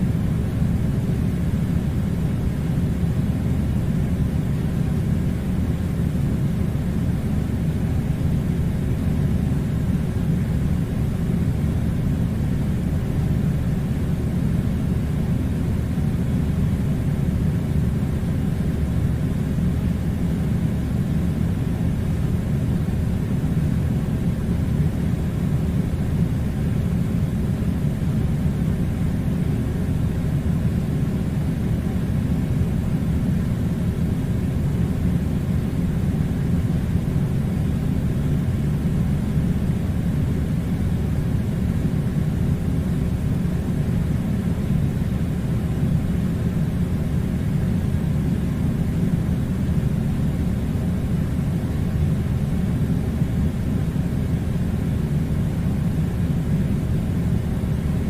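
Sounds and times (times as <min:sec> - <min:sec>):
air conditioner running: 0:00.0 - 0:58.0.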